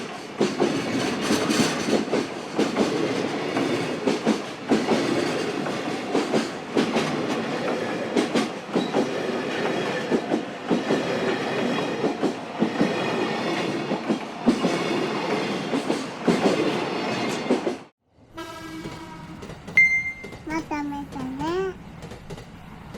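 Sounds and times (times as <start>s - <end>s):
freight train wagons rumbling: 18.8s - 22.9s.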